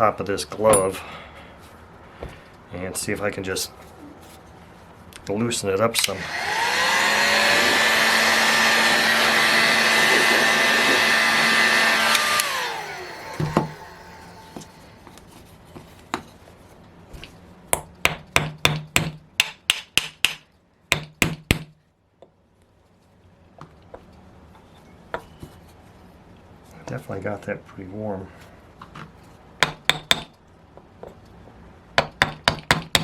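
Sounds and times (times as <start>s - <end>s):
heat gun blowing: 6.0s - 15.1s
fan winding down whine: 6.0s - 15.2s.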